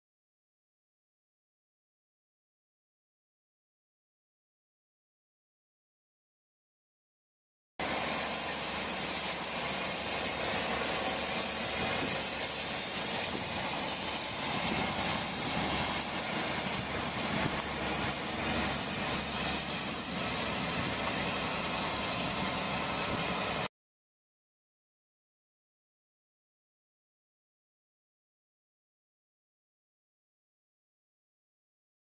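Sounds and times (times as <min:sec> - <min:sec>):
thin high whine: 0:07.8 - 0:23.7
vehicle engine running: 0:07.8 - 0:23.7.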